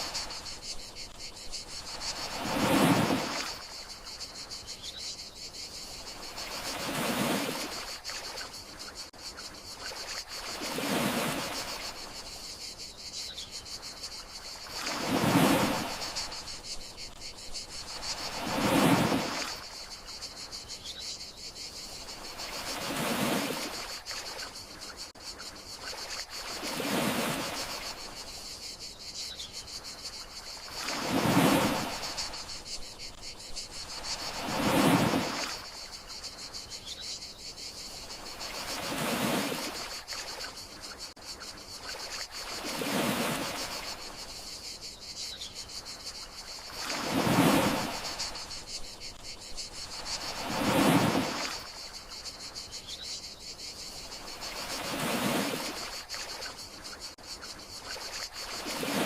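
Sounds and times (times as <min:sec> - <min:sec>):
sea waves washing on shore: 0:00.0 - 0:03.7, 0:06.1 - 0:08.5, 0:09.8 - 0:12.2, 0:14.4 - 0:17.2, 0:17.9 - 0:19.8, 0:22.2 - 0:24.4, 0:25.8 - 0:28.2, 0:30.5 - 0:32.7, 0:33.8 - 0:36.2, 0:38.2 - 0:41.2, 0:41.8 - 0:44.2, 0:46.6 - 0:49.2, 0:49.8 - 0:52.2, 0:54.2 - 0:56.6, 0:57.8 - 0:59.0
crickets chirring: 0:00.0 - 0:59.0.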